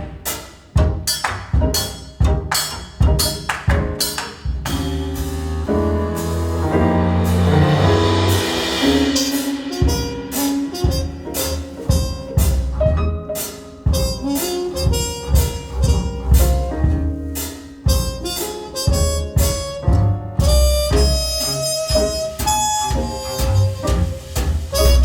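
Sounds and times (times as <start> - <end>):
drum kit beat: 0.0 - 25.0
bass notes: 0.8 - 25.0
cymbal swell: 4.9 - 11.8.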